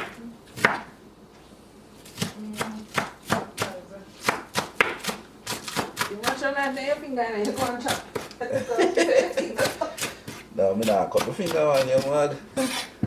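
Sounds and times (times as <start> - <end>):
knife chopping on cutting board: 0.0 - 0.9, 2.0 - 6.8, 7.4 - 8.7, 9.6 - 12.2.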